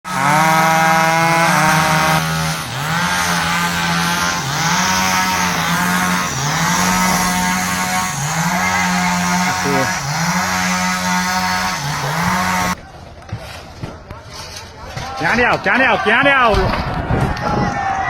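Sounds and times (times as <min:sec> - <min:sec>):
engine running hard: 0:00.0 - 0:12.8.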